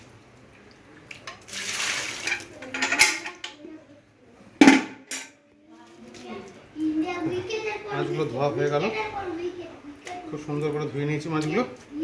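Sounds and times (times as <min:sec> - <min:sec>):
metal dishes clattering: 0:02.2 - 0:03.6, 0:04.6 - 0:05.4.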